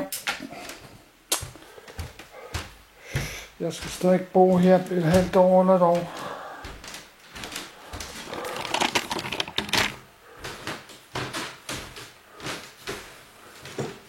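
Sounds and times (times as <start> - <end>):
household items being handled: 7.3 - 10.2.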